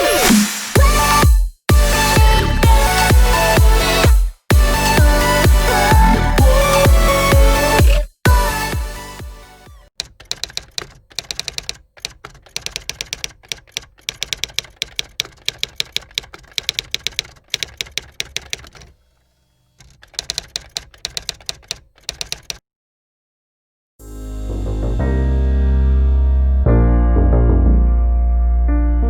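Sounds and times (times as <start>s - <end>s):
rapid typing-like clicks: 10.0s - 19.0s, 19.8s - 22.6s.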